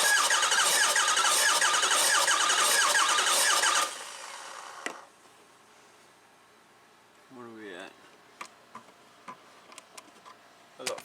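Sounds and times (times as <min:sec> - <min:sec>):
diesel engine cranking on starter: 0:00.0 - 0:05.0.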